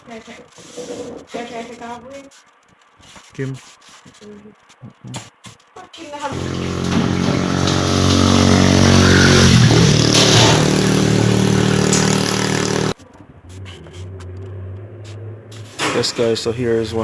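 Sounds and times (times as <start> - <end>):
vehicle engine running: 6.3 - 15.8.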